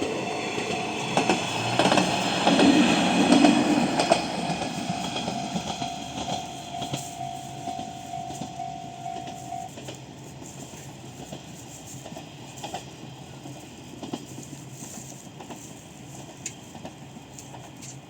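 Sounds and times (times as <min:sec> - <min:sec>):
pulsing electronic crossing alarm: 0:00.0 - 0:02.6, 0:03.6 - 0:09.7
diesel railcar engine drone: 0:00.0 - 0:18.0.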